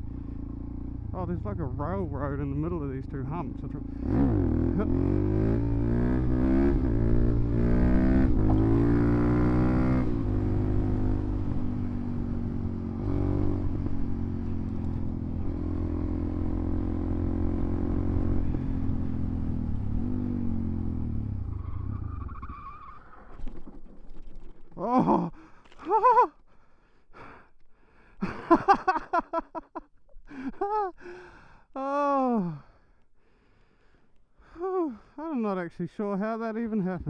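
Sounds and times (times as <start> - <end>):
motorcycle engine revving: 0.0 - 22.4.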